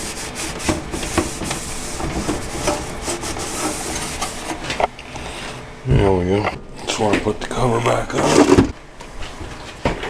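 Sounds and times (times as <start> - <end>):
computer parts rubbing and clicking: 0.0 - 4.9.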